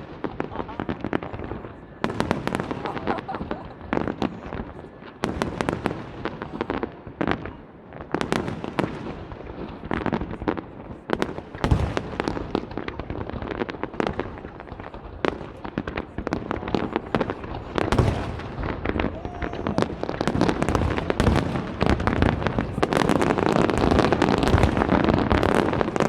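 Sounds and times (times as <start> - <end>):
fireworks bangs and crackles: 0.0 - 26.0
deep firework boom: 11.6 - 12.4, 17.5 - 26.0.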